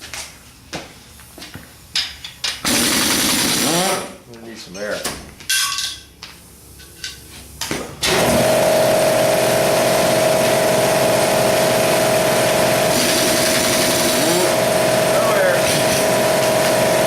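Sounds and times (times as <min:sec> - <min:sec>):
air compressor running: 0:02.6 - 0:04.2, 0:07.8 - 0:17.0.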